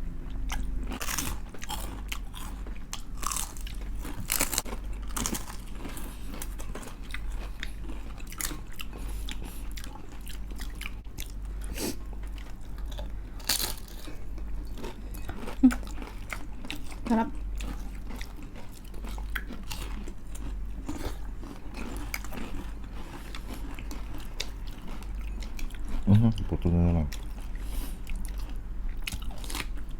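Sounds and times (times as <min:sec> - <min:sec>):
crunching fried chicken skin: 0:00.9 - 0:09.0, 0:12.8 - 0:16.4.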